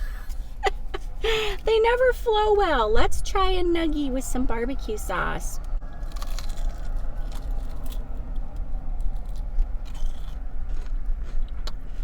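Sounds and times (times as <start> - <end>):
steady low rumble: 0.0 - 12.0
biting and chewing: 5.6 - 12.0.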